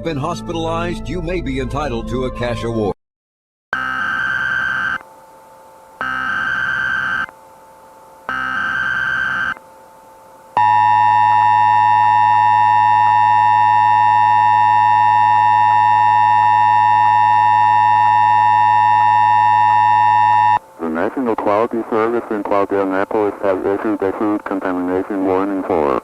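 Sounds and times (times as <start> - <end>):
harsh digital data bursts: 3.8 - 5.0, 6.0 - 7.3, 8.3 - 9.6.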